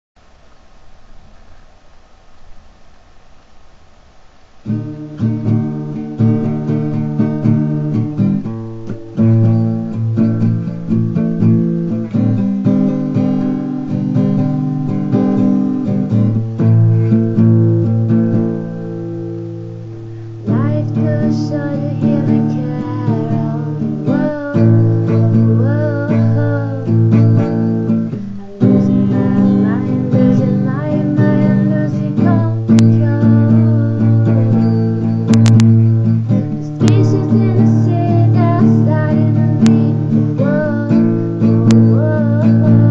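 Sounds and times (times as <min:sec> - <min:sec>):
acoustic guitar strumming chords: 0:04.6 - 0:42.9.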